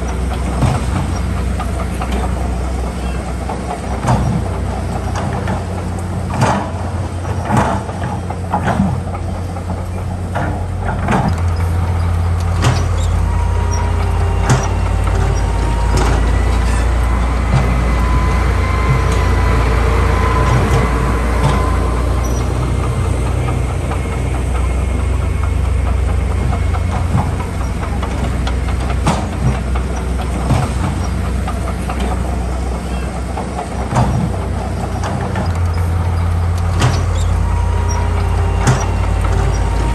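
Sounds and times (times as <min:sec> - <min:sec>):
diesel machinery engine drone: 0:00.0 - 0:39.9
high squeal: 0:11.4 - 0:23.7, 0:34.7 - 0:39.9.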